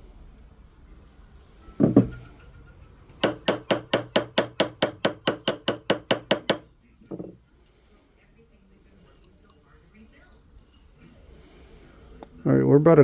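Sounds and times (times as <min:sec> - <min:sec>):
hammer tapping metal ring: 0:03.2 - 0:07.4.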